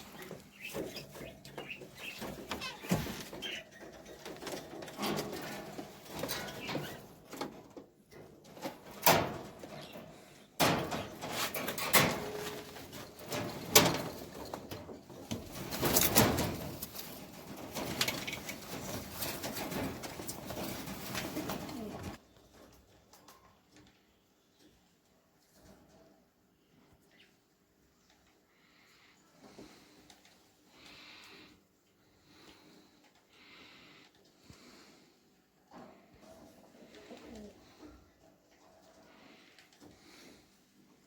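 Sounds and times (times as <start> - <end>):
pigeons cooing: 0.0 - 7.1, 9.6 - 22.2, 36.4 - 38.2.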